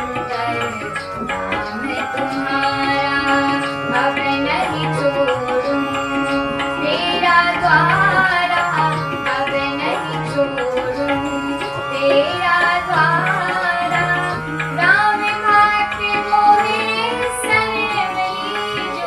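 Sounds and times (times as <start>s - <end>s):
tabla: 0.0s - 19.0s.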